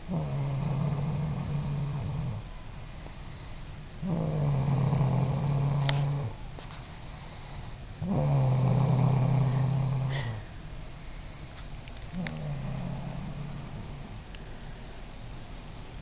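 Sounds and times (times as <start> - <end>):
low-pitched snoring: 0.0 - 2.5, 4.0 - 6.4, 7.6 - 10.5, 12.1 - 14.2
quiet breath: 1.6 - 4.0, 5.9 - 8.0, 9.4 - 15.6.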